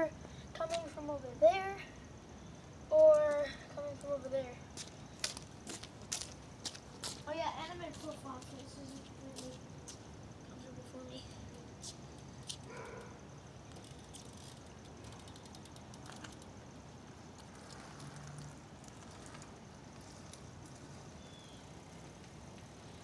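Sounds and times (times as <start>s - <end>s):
outdoor background noise: 0.0s - 23.0s
bike clicks and ticks: 12.1s - 23.0s.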